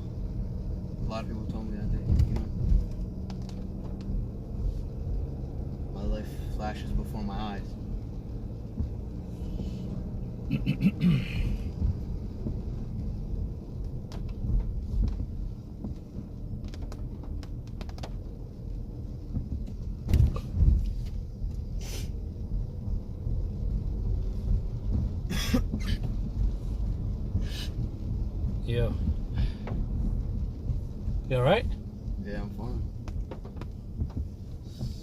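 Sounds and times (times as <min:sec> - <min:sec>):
road rumble inside car: 0:00.0 - 0:35.0
passenger coughing: 0:10.4 - 0:11.7, 0:25.3 - 0:26.2.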